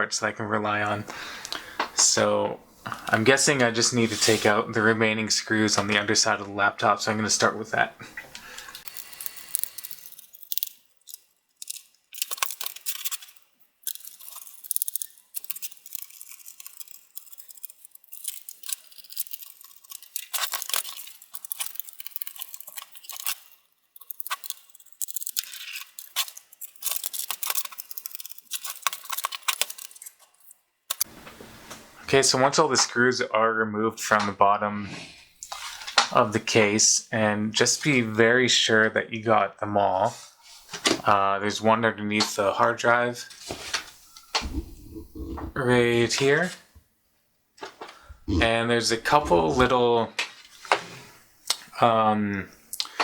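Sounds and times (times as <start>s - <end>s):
screwdriver clicking on screws: 8.8s - 30.1s.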